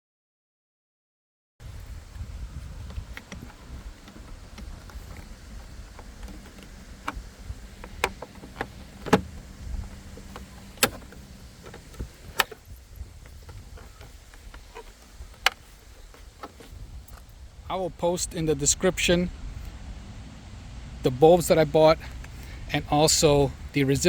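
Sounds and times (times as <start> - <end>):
plastic trim clicking into place: 3.2 - 12.6.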